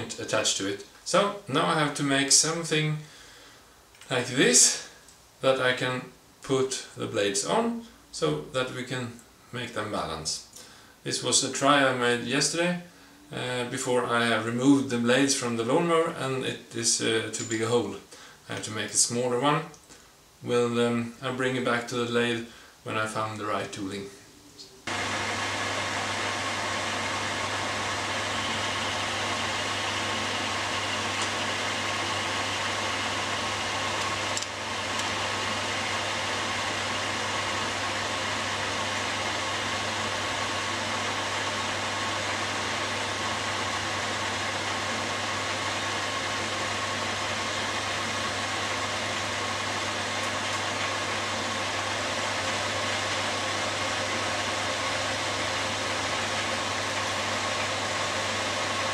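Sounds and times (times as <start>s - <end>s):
metal lathe running: 24.9s - 58.9s.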